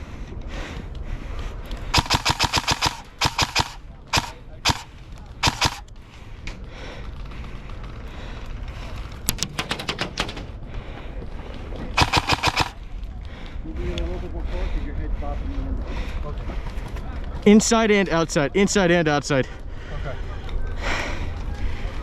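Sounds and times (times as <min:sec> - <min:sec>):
airsoft rifle firing bursts: 0:01.9 - 0:05.9, 0:12.0 - 0:12.8.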